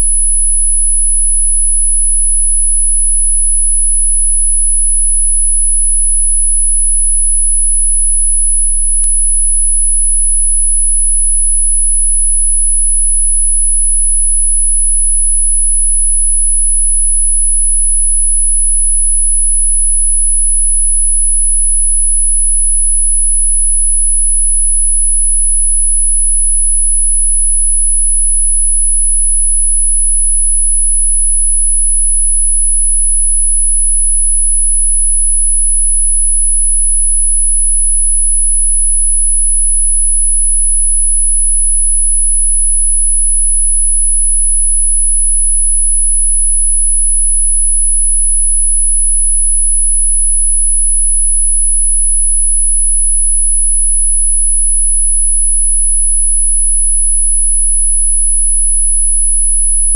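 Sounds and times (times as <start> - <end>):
high-pitched sine tone: 0.0 - 59.9.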